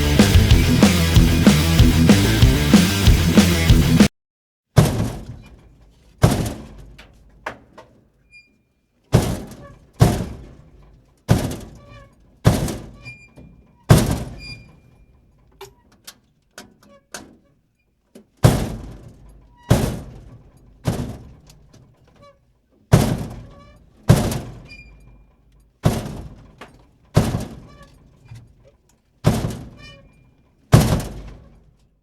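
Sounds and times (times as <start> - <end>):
dumpster door slamming: 30.8 - 31.4.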